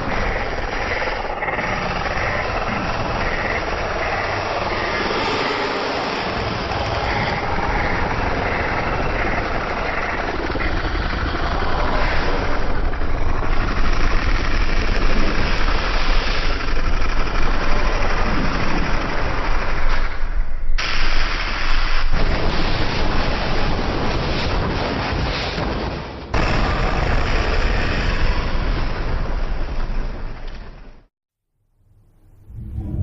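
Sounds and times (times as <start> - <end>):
loud engine-like rumble: 0.0 - 20.5.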